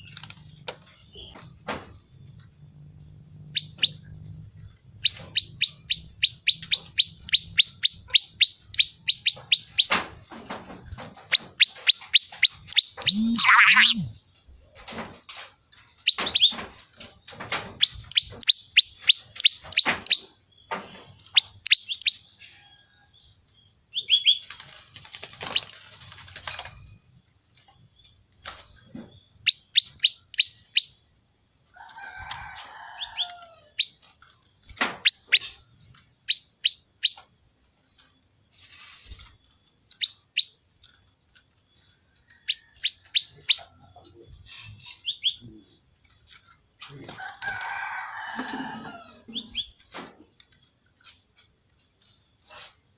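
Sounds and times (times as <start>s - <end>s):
songbird sharp high notes: 13.0s - 14.2s
brief lower bird call: 13.1s - 14.2s.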